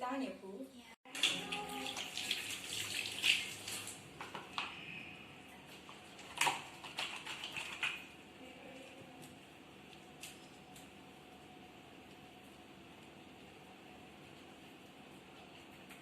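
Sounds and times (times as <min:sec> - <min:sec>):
faint room noise: 0:00.0 - 0:16.0.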